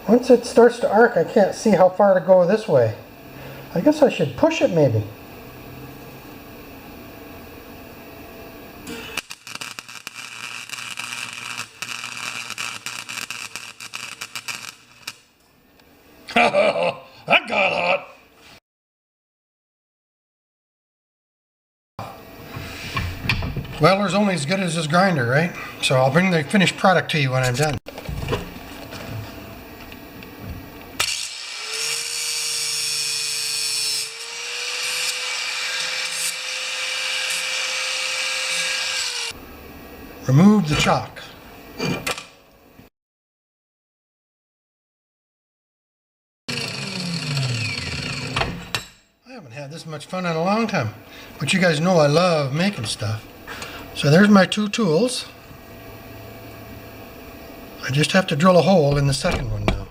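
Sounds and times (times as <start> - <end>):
arc welding crackling hiss: 8.7 - 15.4, 31.0 - 39.4
electric grinder grinding metal: 8.9 - 15.2, 31.0 - 39.4, 46.5 - 48.7.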